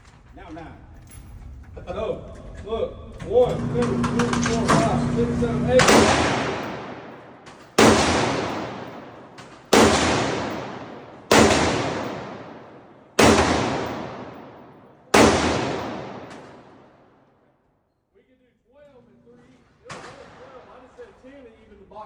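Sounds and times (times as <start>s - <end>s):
gunshots with echo: 3.6s - 17.2s.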